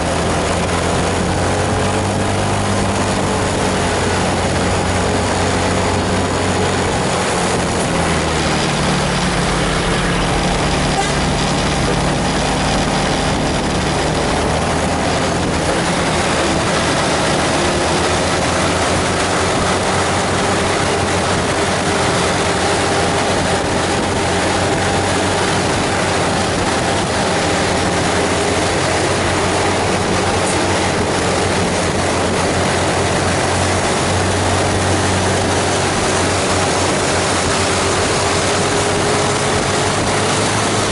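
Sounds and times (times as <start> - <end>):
bus engine running: 0.0 - 40.9
tyres hissing on wet road: 0.0 - 40.9.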